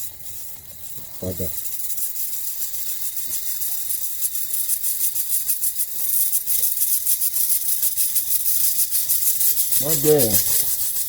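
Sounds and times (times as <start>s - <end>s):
fuel injectors pulsing hiss: 0.0s - 11.0s.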